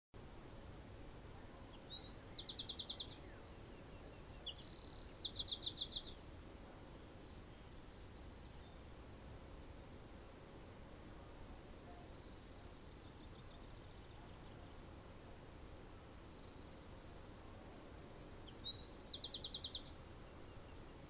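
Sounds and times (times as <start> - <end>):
outdoor background hiss: 0.2 - 21.0
bird singing high trills: 1.5 - 6.4, 18.2 - 21.0.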